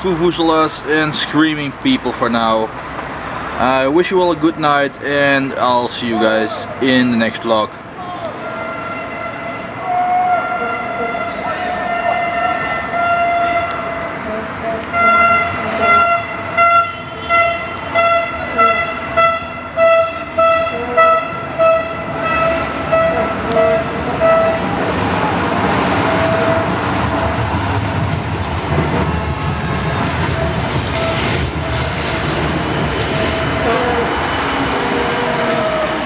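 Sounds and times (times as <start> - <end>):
crowd noise: 0.0 - 36.0
distant car horns: 8.2 - 24.8, 25.9 - 27.4, 30.0 - 31.9, 32.8 - 36.0
car horn blasts: 8.4 - 14.2, 14.9 - 24.7, 26.0 - 26.8, 30.4 - 31.4.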